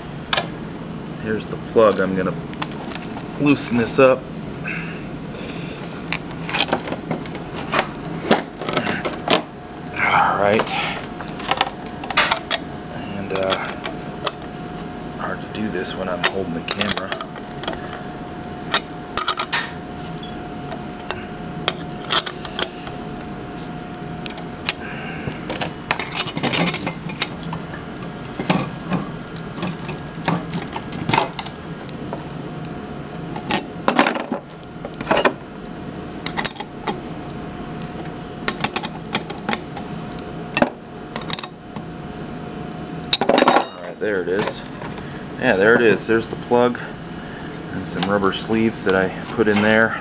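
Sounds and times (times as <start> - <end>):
faint steady hum: 0.0 - 50.0
metallic clinks and knocks: 25.6 - 27.4.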